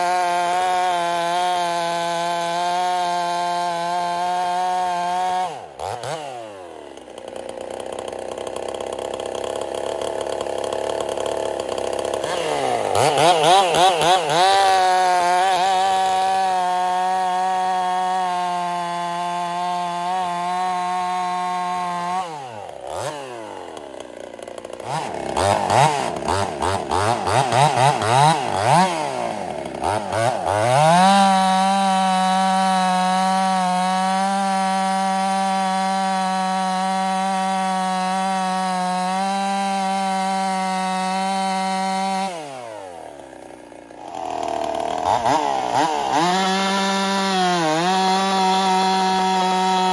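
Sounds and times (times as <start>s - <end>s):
chainsaw revving: 0.0s - 49.9s.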